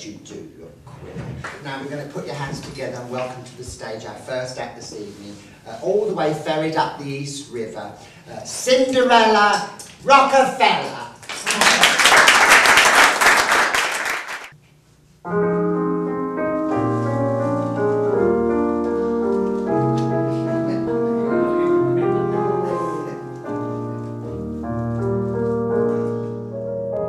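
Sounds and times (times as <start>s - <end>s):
applause: 11.2s - 14.5s
piano playing: 15.2s - 27.0s.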